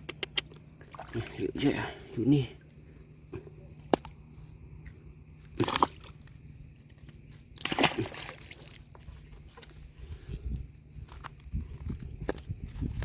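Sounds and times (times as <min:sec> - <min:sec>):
steady low hum: 0:00.0 - 0:13.0
water sloshing and splashing: 0:00.4 - 0:09.8.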